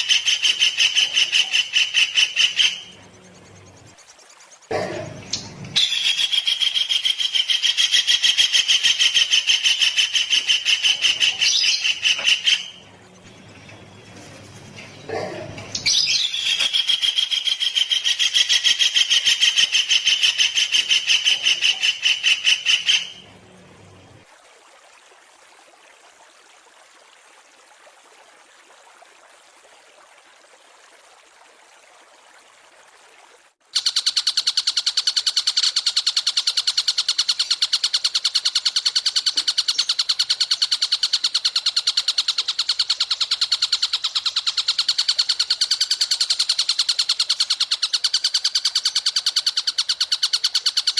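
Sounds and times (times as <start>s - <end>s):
songbird trilling: 0.0s - 3.0s, 5.2s - 13.4s, 15.0s - 23.2s.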